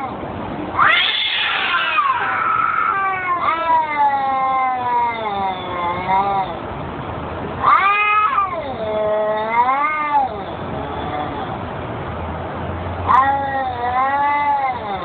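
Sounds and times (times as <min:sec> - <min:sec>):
cat meowing: 0:00.0 - 0:06.6, 0:07.6 - 0:11.6, 0:13.0 - 0:15.0.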